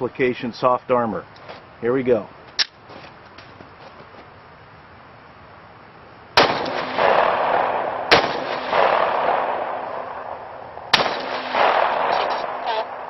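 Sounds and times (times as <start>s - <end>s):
pistol shots with echo: 6.4s - 13.0s.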